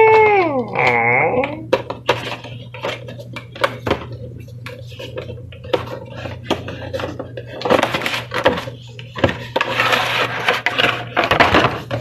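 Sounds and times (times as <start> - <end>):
hard objects clicking and knocking: 0.0 - 12.0.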